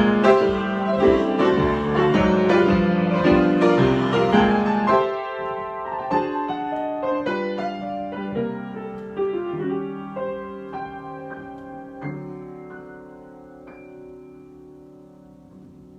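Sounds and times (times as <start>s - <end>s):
solo piano chords and notes: 0.0s - 15.9s.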